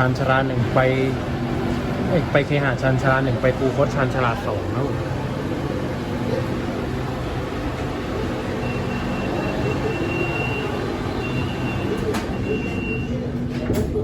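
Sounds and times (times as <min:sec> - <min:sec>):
electric train rumble and hum: 0:00.0 - 0:14.0
faint high whine: 0:02.0 - 0:13.2.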